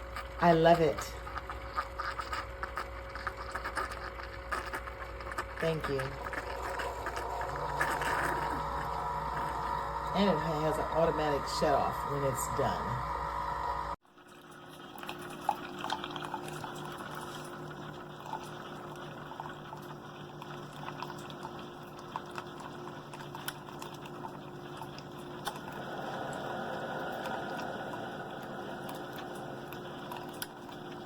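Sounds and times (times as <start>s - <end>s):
coffee maker humming: 0.0s - 31.0s
small pops and sputters: 1.2s - 8.6s
water bubbling into cup: 1.2s - 11.8s, 14.1s - 31.0s.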